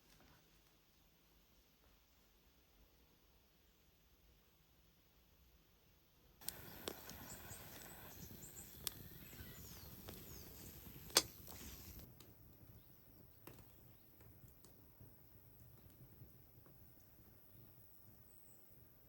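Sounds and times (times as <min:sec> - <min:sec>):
faint bird chirps: 0:06.4 - 0:11.9
sharp clicks or knocks: 0:11.0 - 0:11.6.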